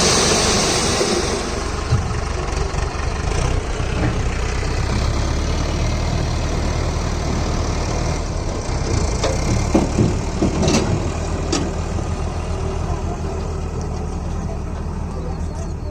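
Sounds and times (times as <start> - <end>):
tractor diesel engine running: 0.0 - 15.9.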